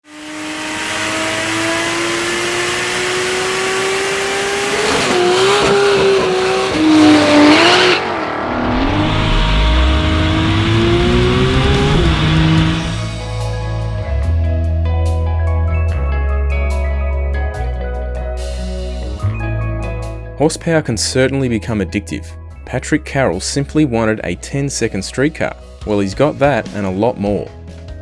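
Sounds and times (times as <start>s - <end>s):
race car engine revving: 0.0s - 14.0s.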